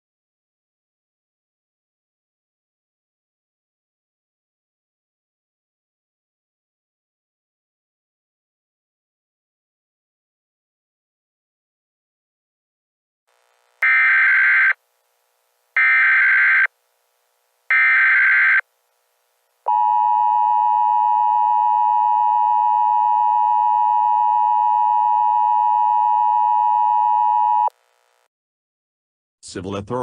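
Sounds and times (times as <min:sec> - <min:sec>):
data burst tones: 0:13.8 - 0:14.8, 0:15.8 - 0:16.7, 0:17.7 - 0:18.6
two-tone attention signal: 0:13.8 - 0:14.8, 0:15.8 - 0:16.7, 0:17.7 - 0:18.6.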